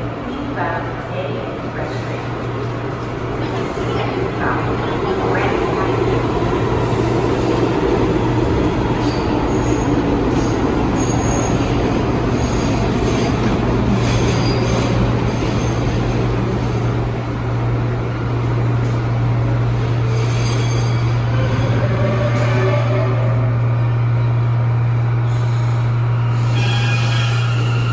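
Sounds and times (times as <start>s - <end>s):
subway train rumbling on rails: 0.0s - 27.9s
wheel squeals: 14.0s - 15.9s, 26.2s - 27.9s.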